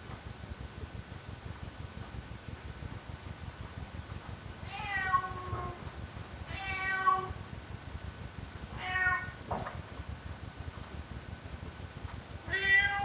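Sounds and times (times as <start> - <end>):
cat meowing: 4.7 - 5.8, 6.5 - 7.4, 8.8 - 9.4, 12.5 - 13.0.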